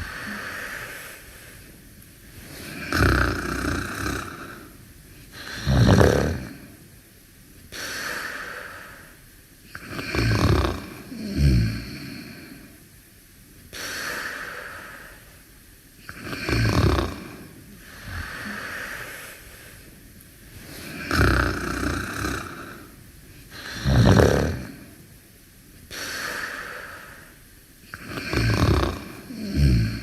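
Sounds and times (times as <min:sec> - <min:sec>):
breathy exhale hiss: 0:00.0 - 0:30.0
low rumbling snore: 0:02.3 - 0:06.8, 0:09.7 - 0:12.8, 0:16.1 - 0:19.8, 0:20.5 - 0:25.0, 0:25.9 - 0:30.0.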